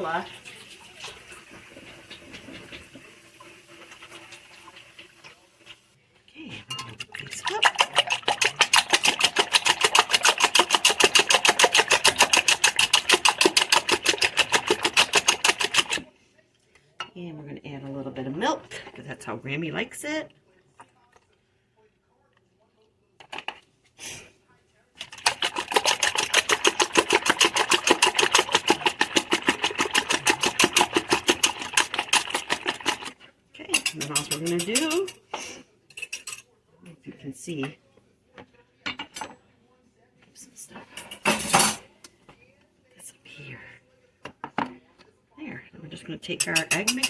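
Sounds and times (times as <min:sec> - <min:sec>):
whisk clicking against bowl: 0:06.8 - 0:16.1, 0:25.0 - 0:35.2, 0:46.2 - 0:47.0.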